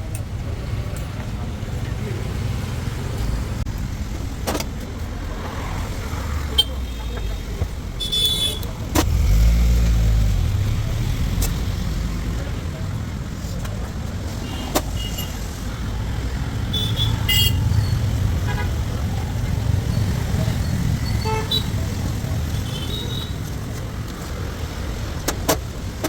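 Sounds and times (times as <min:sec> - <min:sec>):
engine rumble: 0:00.0 - 0:26.0
vehicle passing: 0:09.0 - 0:14.3, 0:15.3 - 0:25.2.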